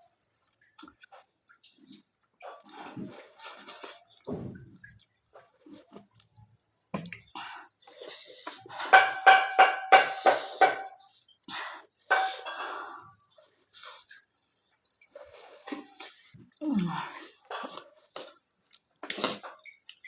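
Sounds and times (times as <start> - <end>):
cutlery clinking against dish: 8.8 - 11.0, 12.1 - 12.7.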